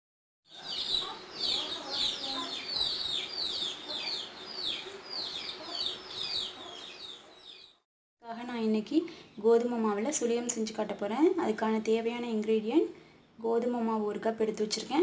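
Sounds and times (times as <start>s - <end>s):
bird chirping: 0.5s - 7.8s.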